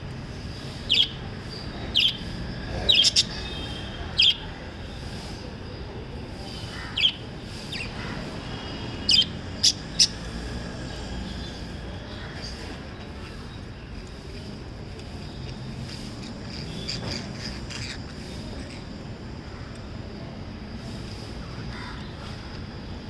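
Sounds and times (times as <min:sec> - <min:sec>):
parrots chirping: 0:00.8 - 0:05.4, 0:06.4 - 0:13.7, 0:15.8 - 0:18.9.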